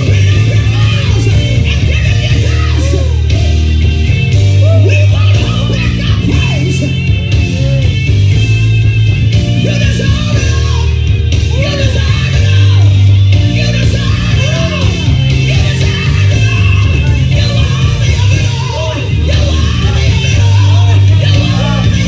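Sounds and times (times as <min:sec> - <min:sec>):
church band playing gospel music: 0:00.0 - 0:22.0
voices singing: 0:09.5 - 0:22.0.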